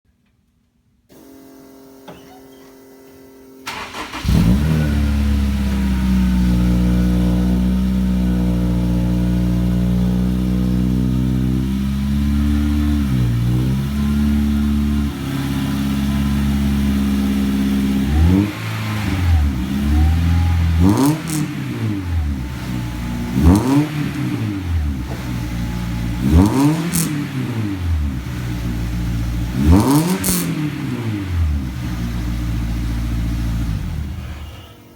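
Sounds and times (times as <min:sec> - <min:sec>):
car engine starting and idling: 0:03.6 - 0:34.9
engine revving: 0:03.7 - 0:34.7.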